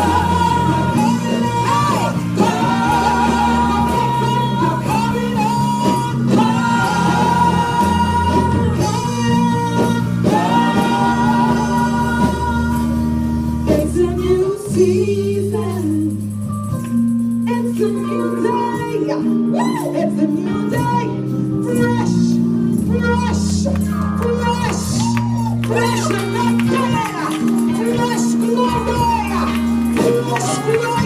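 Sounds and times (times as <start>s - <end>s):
church choir singing: 0.0s - 9.3s, 10.0s - 13.3s
gospel band accompaniment: 0.0s - 31.0s
moving bass line: 0.0s - 31.0s.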